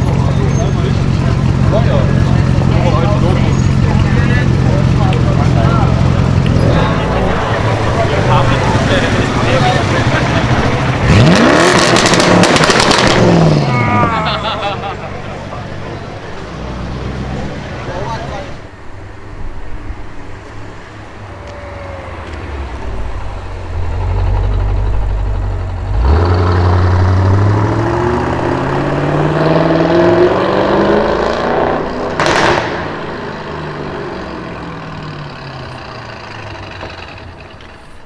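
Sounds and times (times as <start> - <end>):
car engine accelerating: 0.0 - 18.7, 20.4 - 38.0
sharp exhaust crack: 7.8 - 13.7, 22.0 - 33.8.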